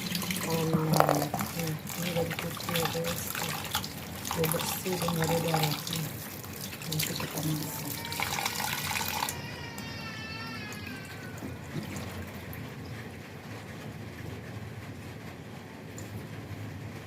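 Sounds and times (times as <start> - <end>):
kitchen tap running: 0.0 - 12.9
low steady hum: 0.0 - 17.0.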